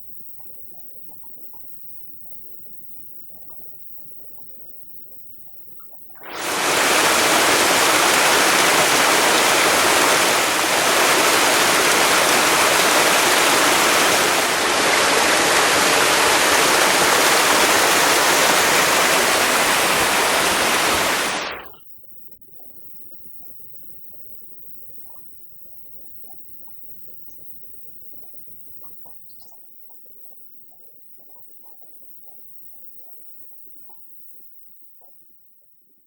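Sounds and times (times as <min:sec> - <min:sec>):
waterfall rushing: 0:06.2 - 0:21.6.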